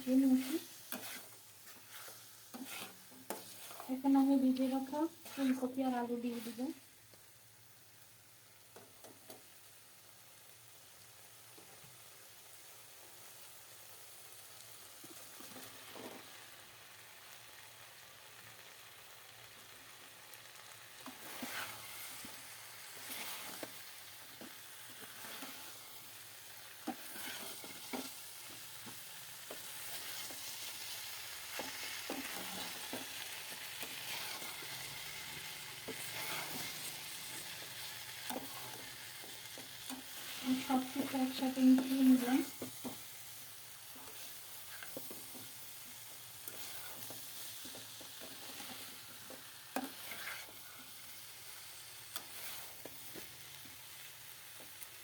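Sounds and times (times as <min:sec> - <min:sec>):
food sizzling in a pan: 0:00.0 - 0:55.0
spatula scraping and knocking on pan: 0:00.2 - 0:05.7, 0:21.0 - 0:22.4, 0:23.0 - 0:25.8, 0:26.8 - 0:30.6, 0:31.4 - 0:35.2, 0:35.8 - 0:43.1, 0:44.0 - 0:45.6, 0:46.4 - 0:50.8.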